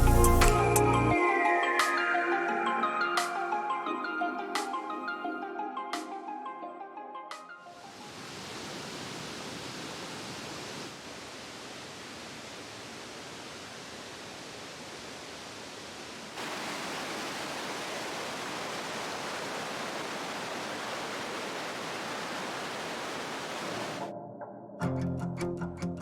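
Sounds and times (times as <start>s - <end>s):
stream water rushing: 7.8s - 24.1s.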